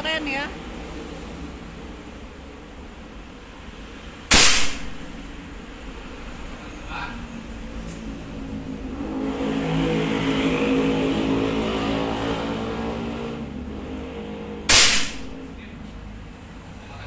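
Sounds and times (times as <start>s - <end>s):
vehicle engine passing by: 3.2s - 17.0s
air rifle shot: 4.3s - 5.3s, 14.7s - 15.4s.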